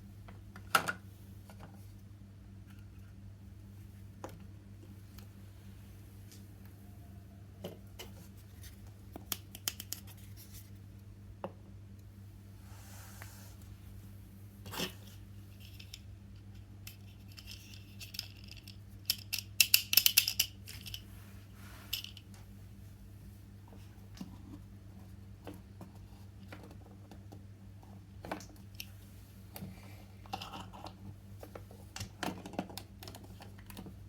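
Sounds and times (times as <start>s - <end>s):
steady low hum: 0.0s - 34.0s
plastic toy pieces clicking: 16.9s - 21.0s.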